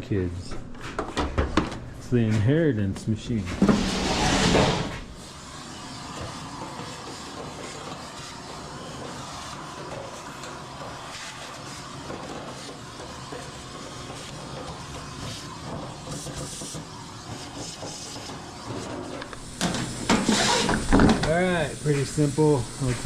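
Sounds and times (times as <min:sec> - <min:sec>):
machine running with hiss: 0:03.6 - 0:23.0.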